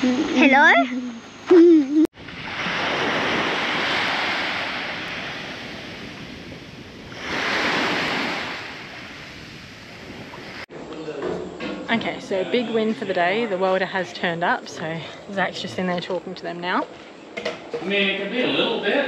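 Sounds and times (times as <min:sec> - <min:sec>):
ocean waves washing in: 0:02.2 - 0:10.7.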